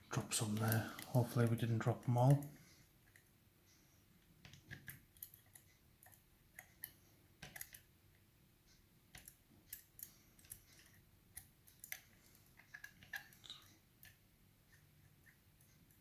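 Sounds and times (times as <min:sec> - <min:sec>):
metallic clicks of lock picking: 0:09.1 - 0:13.4.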